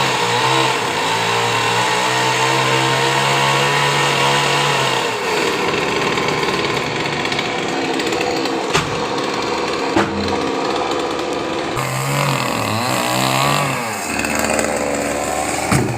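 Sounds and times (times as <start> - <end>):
chainsaw cutting wood: 0.0 - 15.9
wood cracking: 5.3 - 15.9.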